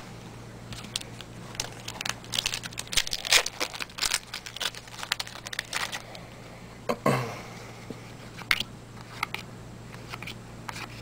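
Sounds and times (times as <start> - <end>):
card wrappers crinkling and tearing: 0.7 - 6.3.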